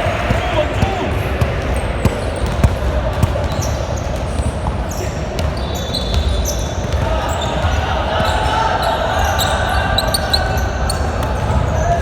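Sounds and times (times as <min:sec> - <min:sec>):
din of voices in large hall: 0:00.0 - 0:12.0
basketball bouncing on hardwood floor: 0:00.3 - 0:04.8
shoe squeaks on court: 0:03.4 - 0:12.0.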